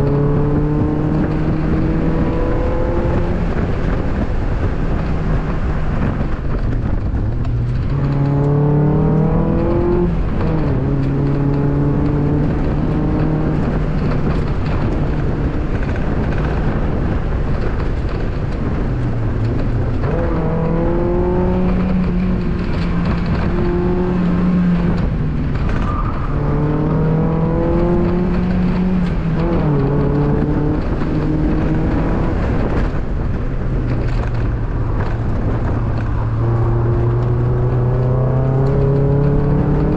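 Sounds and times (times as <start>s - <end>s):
car engine accelerating: 0.0s - 39.9s
road and wind noise: 0.0s - 39.9s.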